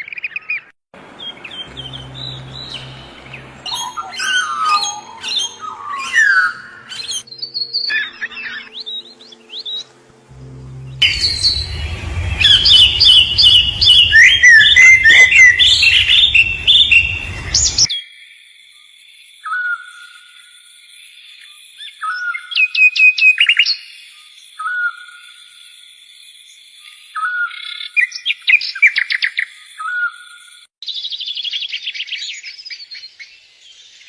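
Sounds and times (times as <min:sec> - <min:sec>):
songbirds chirping and trilling: 0:00.0 - 0:10.1, 0:10.7 - 0:18.2
steady high tone: 0:01.6 - 0:17.9.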